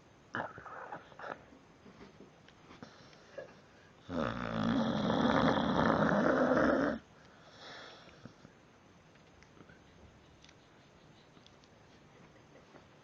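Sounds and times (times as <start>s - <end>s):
dog snoring: 4.1s - 7.0s
faint breath: 7.1s - 8.5s.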